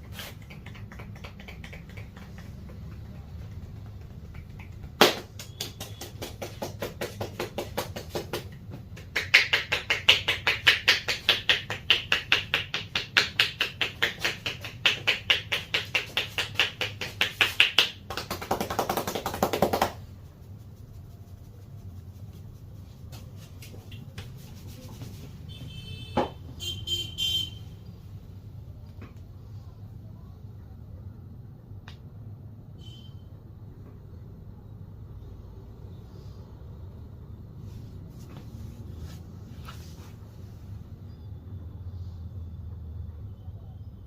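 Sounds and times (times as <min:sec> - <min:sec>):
hands slapping and tapping head: 0:00.0 - 0:20.0, 0:23.1 - 0:25.3.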